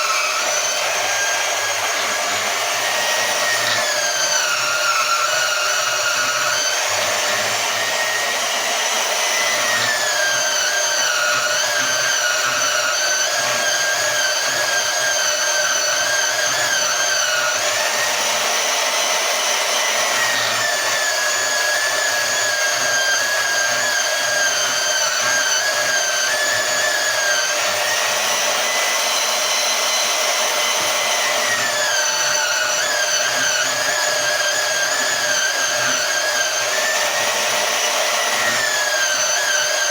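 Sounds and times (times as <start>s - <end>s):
band saw cutting steel: 0.0s - 39.9s.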